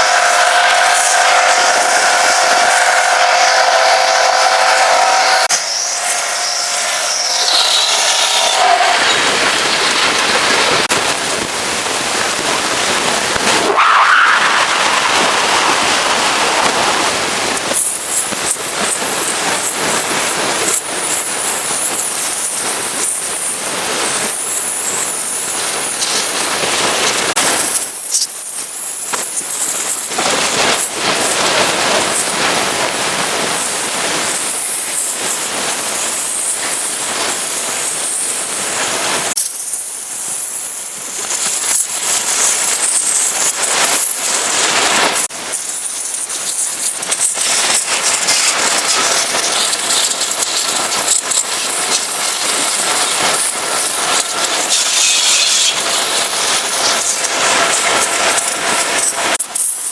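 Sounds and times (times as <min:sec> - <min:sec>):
pressure washer spraying: 0:00.0 - 0:10.9, 0:39.6 - 0:59.8.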